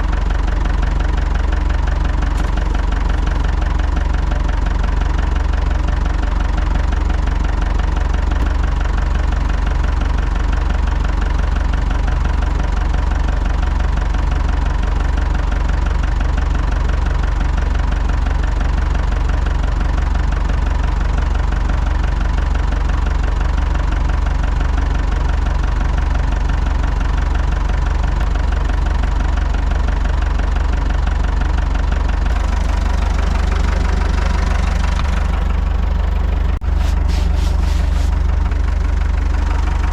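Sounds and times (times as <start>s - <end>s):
small engine running: 0.0s - 10.4s, 31.0s - 39.9s.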